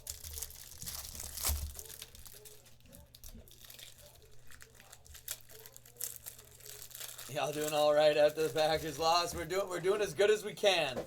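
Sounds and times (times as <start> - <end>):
wrapper crinkling and tearing: 0.0 - 8.7.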